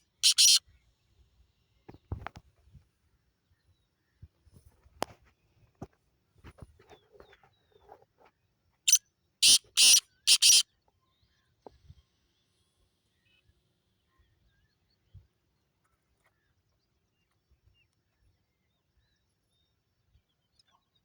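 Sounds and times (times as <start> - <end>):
bird harsh grating calls: 0.2 - 0.6, 8.9 - 10.6.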